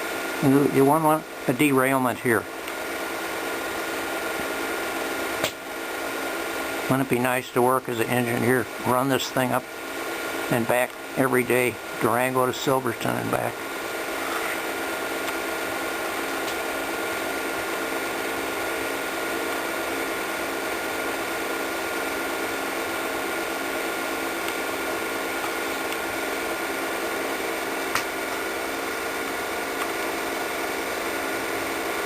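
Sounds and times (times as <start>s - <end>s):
film projector whirring: 0.0s - 32.0s
sharp click: 5.4s - 5.6s, 27.9s - 28.1s.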